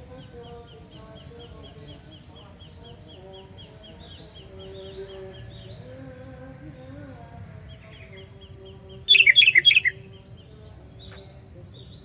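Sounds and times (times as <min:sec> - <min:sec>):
insects chirping: 0:00.0 - 0:12.0
bird notes: 0:07.7 - 0:12.0.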